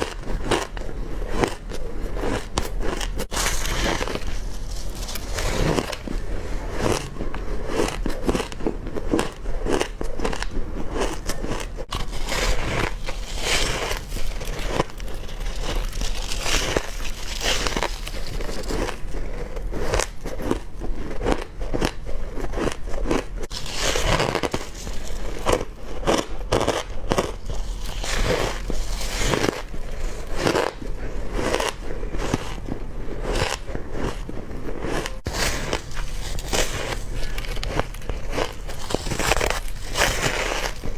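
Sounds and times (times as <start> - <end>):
person crunching ice: 0.0 - 40.9.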